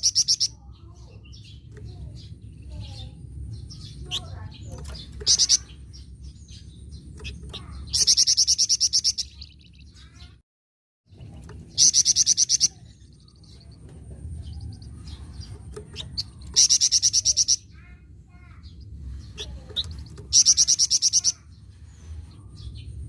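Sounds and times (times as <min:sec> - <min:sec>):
songbird rattling call: 0:14.4 - 0:17.9, 0:18.6 - 0:22.0.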